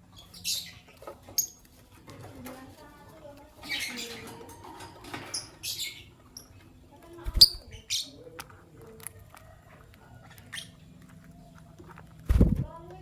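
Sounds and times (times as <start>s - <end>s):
birds chirping: 0.0s - 2.0s, 3.5s - 8.4s.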